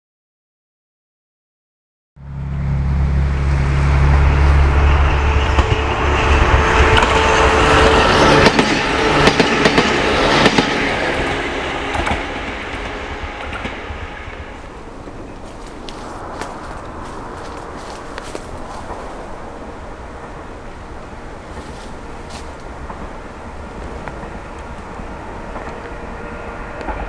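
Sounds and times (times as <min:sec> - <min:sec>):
train passing with low hum: 0:02.2 - 0:27.0
wheels clacking over rail joints: 0:05.5 - 0:27.0.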